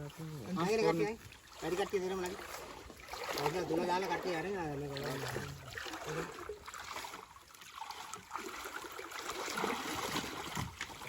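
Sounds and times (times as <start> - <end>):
water splashing and trickling: 0.0 - 11.0.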